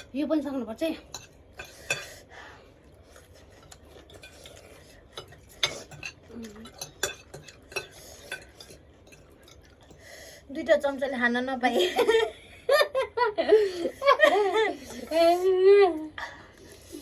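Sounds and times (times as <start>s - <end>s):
spoons clinking against bowls: 0.0s - 0.2s, 1.0s - 2.2s, 3.3s - 10.1s.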